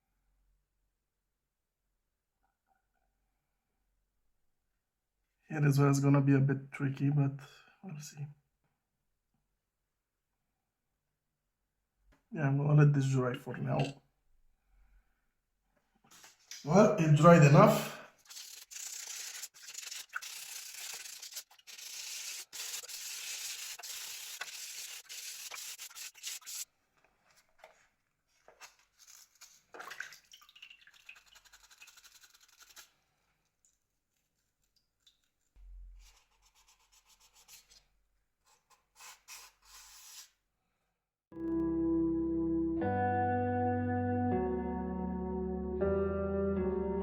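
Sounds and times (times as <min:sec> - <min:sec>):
sandpaper rubbing on plastic: 0:18.2 - 0:26.7, 0:31.2 - 0:32.9, 0:36.0 - 0:37.8, 0:38.5 - 0:40.4.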